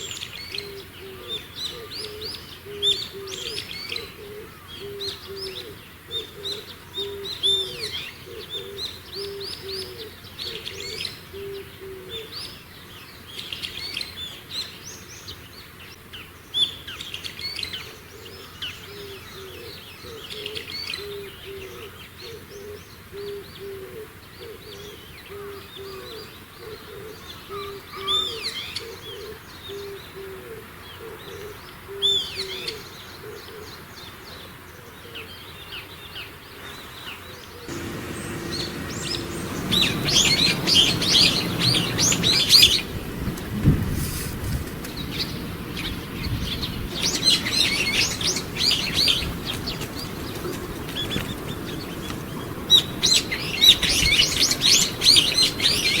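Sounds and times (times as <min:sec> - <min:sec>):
high bird chirps: 0:37.7 - 0:43.2, 0:44.9 - 0:56.0.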